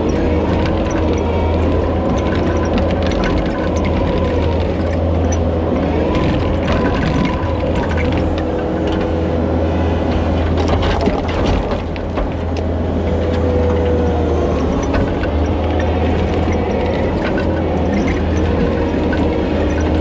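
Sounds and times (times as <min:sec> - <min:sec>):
diesel engine running: 0:00.0 - 0:20.0.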